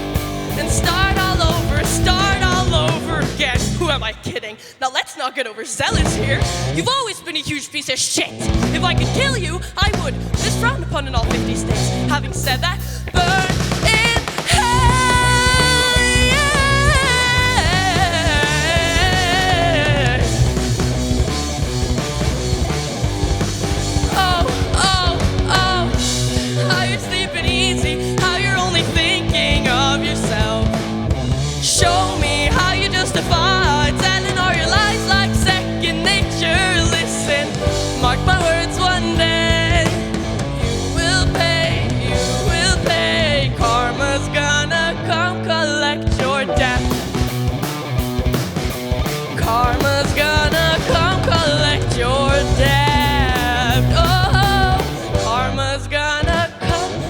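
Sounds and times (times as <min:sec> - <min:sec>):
live rock band playing: 0:00.0 - 0:04.4, 0:05.9 - 0:07.6, 0:08.2 - 0:57.0.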